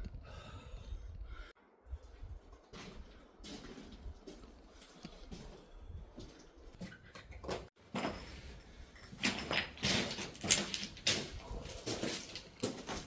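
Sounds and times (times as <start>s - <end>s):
person breathing hard: 0.0s - 1.6s.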